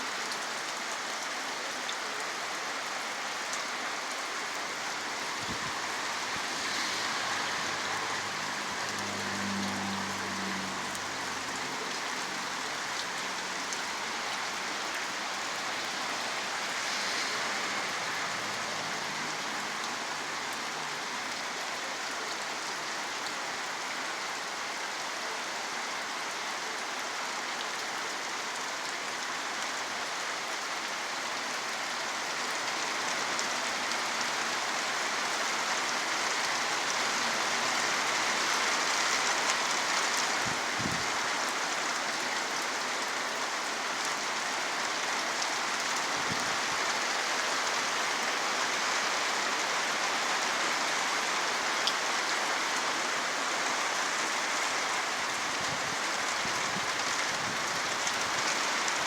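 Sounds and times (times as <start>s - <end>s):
steady rain falling: 0.0s - 59.0s.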